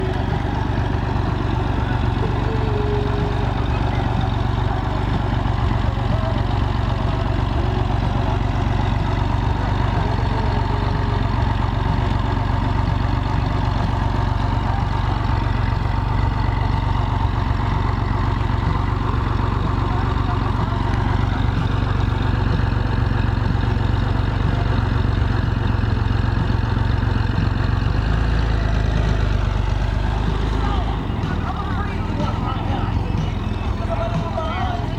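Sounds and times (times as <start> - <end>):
engine running with low rumble: 0.0 - 34.9.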